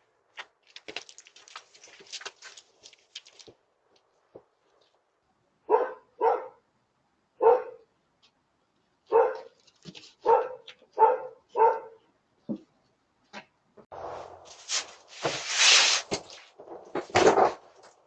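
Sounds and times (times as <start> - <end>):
dog barking: 5.7 - 6.6, 7.4 - 7.9, 9.1 - 9.6, 10.2 - 12.1.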